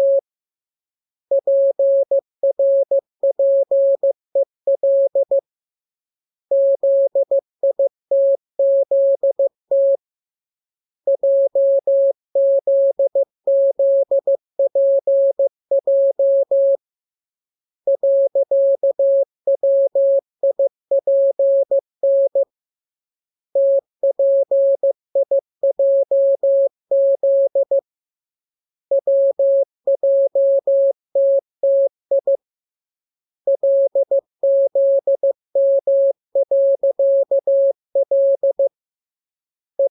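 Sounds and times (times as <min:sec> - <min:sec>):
morse code beeps: 0:11.2 - 0:16.8, 0:23.6 - 0:27.8, 0:28.9 - 0:32.4, 0:33.5 - 0:38.7.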